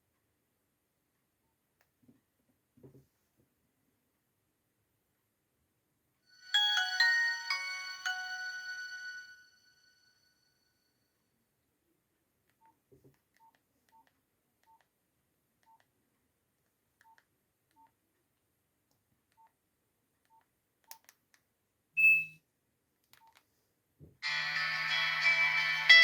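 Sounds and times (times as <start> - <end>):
ringtone melody: 6.4 - 10.0, 24.2 - 26.0
keypad beeps: 22.0 - 22.4.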